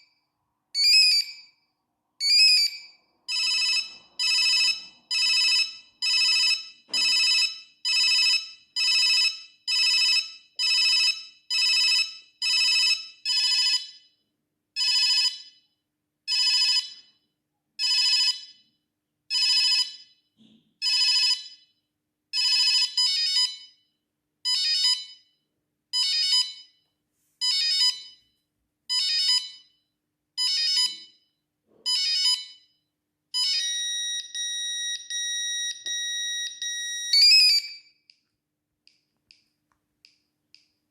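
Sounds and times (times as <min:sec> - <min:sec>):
mobile phone beeping ringtone: 0:00.8 - 0:01.6, 0:02.2 - 0:14.2, 0:14.8 - 0:15.7, 0:16.3 - 0:17.2, 0:17.8 - 0:18.7, 0:19.3 - 0:20.2, 0:20.8 - 0:23.9, 0:24.5 - 0:25.4, 0:26.0 - 0:29.8, 0:30.4 - 0:31.3, 0:31.9 - 0:32.8, 0:33.4 - 0:37.9
steady phone ringtone: 0:00.8 - 0:01.6, 0:02.2 - 0:14.2, 0:14.8 - 0:15.7, 0:16.3 - 0:17.2, 0:17.8 - 0:23.9, 0:24.5 - 0:26.8, 0:27.4 - 0:32.8, 0:33.4 - 0:37.7.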